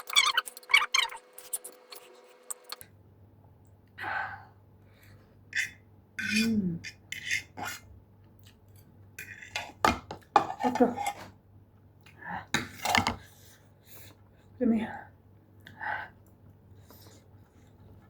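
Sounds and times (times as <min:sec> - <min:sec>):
metal utensil scraping a pot: 0:05.6 - 0:07.8.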